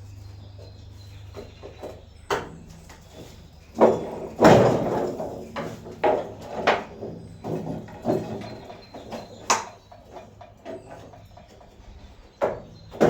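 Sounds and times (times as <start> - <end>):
heavy metal knocks and clanks: 3.7 - 13.0.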